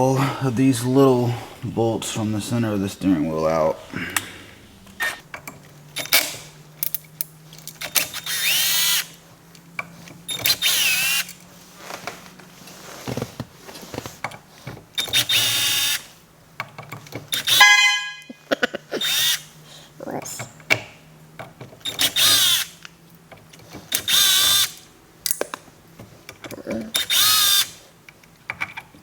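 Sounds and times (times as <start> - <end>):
power drill motor: 7.8 - 9.2, 10.3 - 11.5, 15.0 - 16.1, 19.0 - 19.6, 21.8 - 22.9, 23.8 - 24.9, 26.9 - 27.9.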